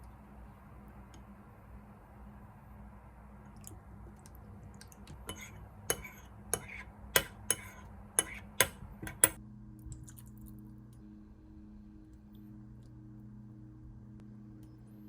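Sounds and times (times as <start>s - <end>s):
steady low hum: 0.0s - 15.0s
kitchenware clinking: 5.2s - 9.4s.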